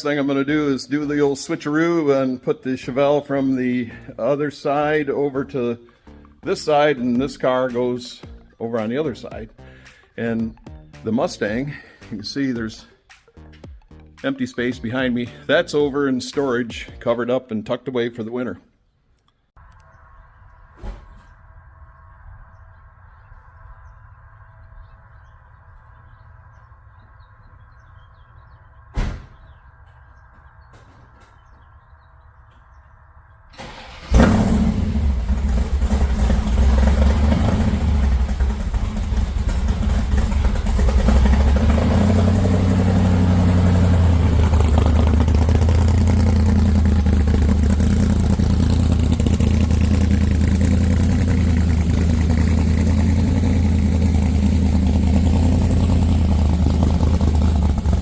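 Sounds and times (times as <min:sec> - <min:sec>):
car engine cranking and idling: 0:19.2 - 0:58.0
clunk: 0:20.8 - 0:21.4.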